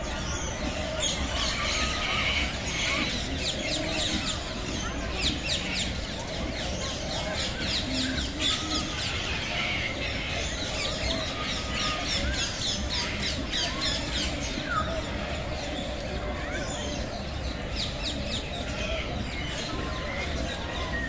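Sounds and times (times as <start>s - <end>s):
small birds chirping and squawking: 0.0s - 21.0s.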